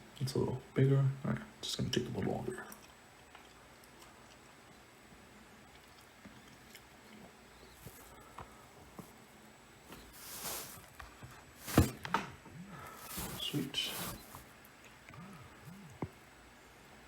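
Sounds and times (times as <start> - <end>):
soft breath-like hiss: 9.9 - 10.9, 12.8 - 14.5.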